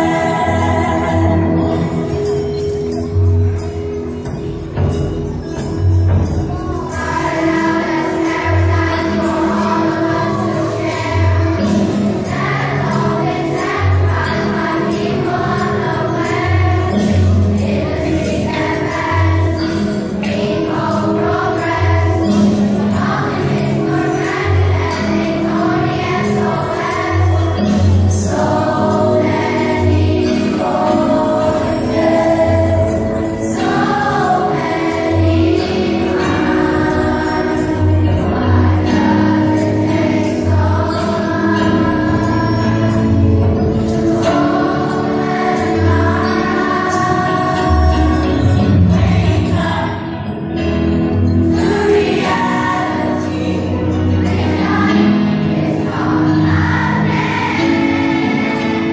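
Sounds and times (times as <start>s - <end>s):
children's choir singing: 0.0s - 58.9s
instrumental accompaniment: 0.0s - 58.9s.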